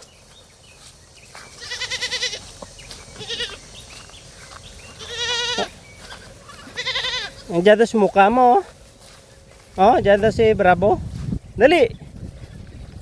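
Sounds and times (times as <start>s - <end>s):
goats bleating: 1.5s - 3.9s, 4.8s - 8.6s.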